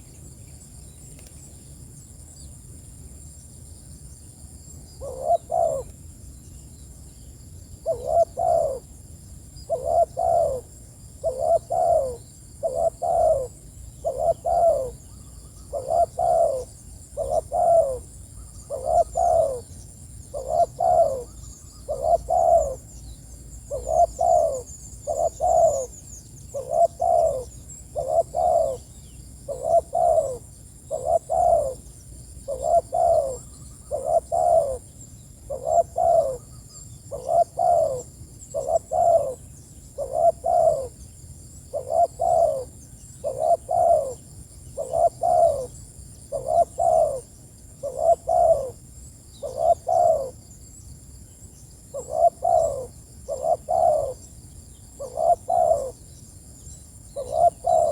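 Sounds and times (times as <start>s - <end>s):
dove cooing: 5.0s - 5.9s, 7.8s - 8.9s, 9.6s - 23.0s, 23.6s - 41.1s, 41.7s - 48.8s, 49.4s - 50.4s, 51.9s - 54.2s, 55.0s - 56.0s, 57.1s - 57.9s
small birds chirping: 9.6s - 57.9s.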